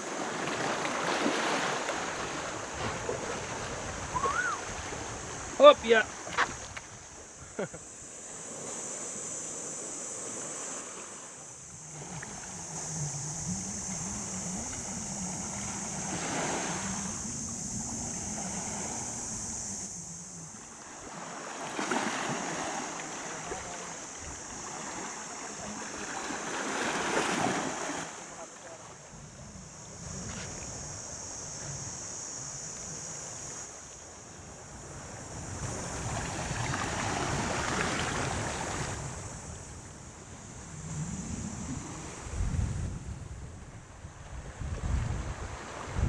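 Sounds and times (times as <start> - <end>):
waves washing on rocky beach: 0.0 - 30.7
steady high hiss: 1.6 - 46.0
low wavering hum: 11.3 - 21.4.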